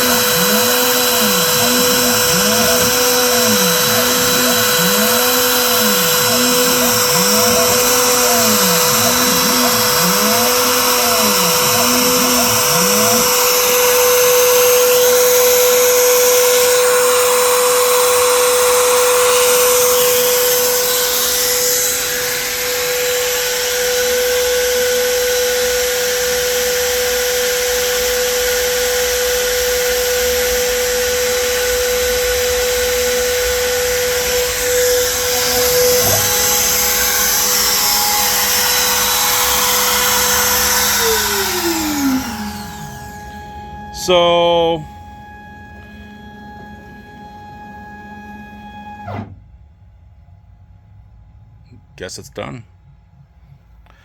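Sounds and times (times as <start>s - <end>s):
low tone sweeping up and down: 0.0s - 22.4s, 31.6s - 48.5s
cutting noise: 0.0s - 23.8s, 31.3s - 43.1s
router spindle whine: 0.0s - 49.4s.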